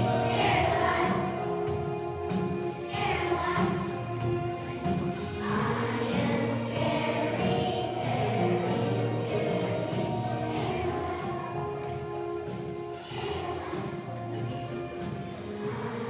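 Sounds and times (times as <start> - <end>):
children's choir singing: 0.0 - 16.0
instrumental accompaniment with beat: 0.0 - 16.0.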